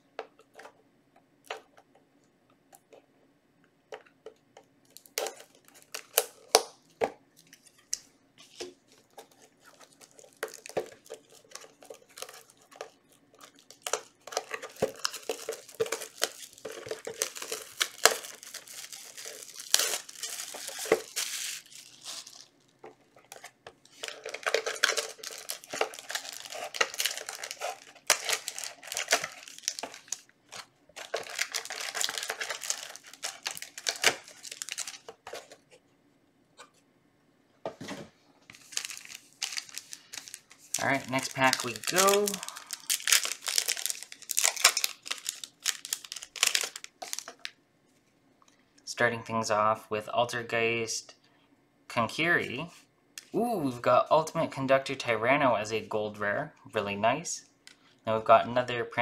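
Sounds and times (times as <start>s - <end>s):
foil packs crinkling and tearing: 5.0s - 6.8s, 7.9s - 22.6s, 23.2s - 35.6s, 38.5s - 47.6s.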